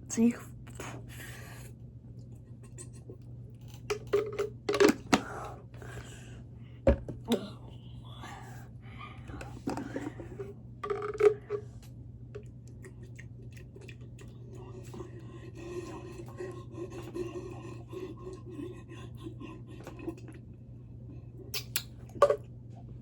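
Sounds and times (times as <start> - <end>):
steady low hum: 0.0 - 23.0
person chewing food: 12.4 - 22.2.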